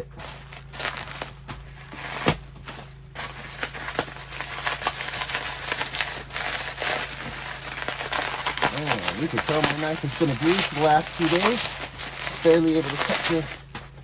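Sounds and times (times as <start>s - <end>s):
cardboard crinkling: 0.0s - 14.0s
knife sawing through cardboard: 3.5s - 13.6s.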